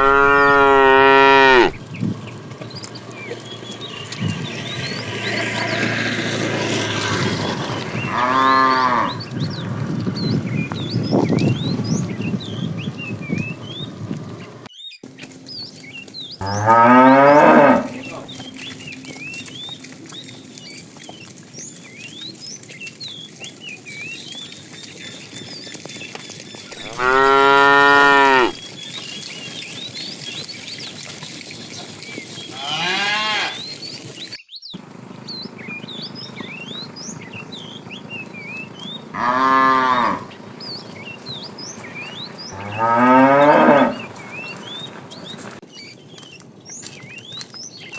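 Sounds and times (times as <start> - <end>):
cows mooing: 0.0 - 12.6, 16.4 - 22.7, 23.3 - 29.3, 31.0 - 33.9, 35.5 - 45.6.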